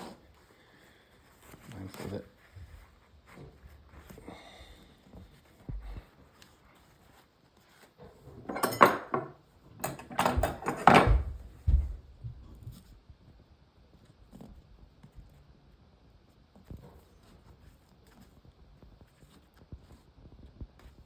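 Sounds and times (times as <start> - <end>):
hard objects knocking and clattering: 8.4 - 12.0.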